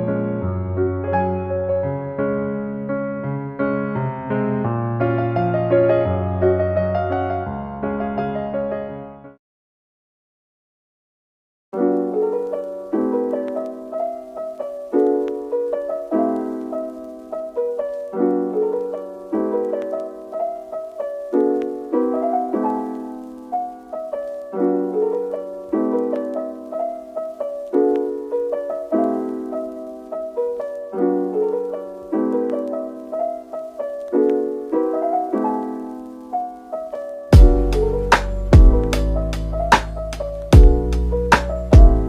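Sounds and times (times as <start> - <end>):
piano chords ringing: 0.0 - 9.4, 11.8 - 42.0.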